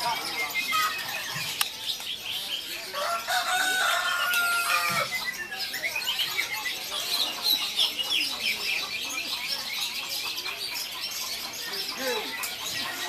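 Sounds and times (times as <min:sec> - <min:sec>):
songbirds chirping and singing: 0:00.0 - 0:13.0
rooster crowing: 0:03.0 - 0:05.1.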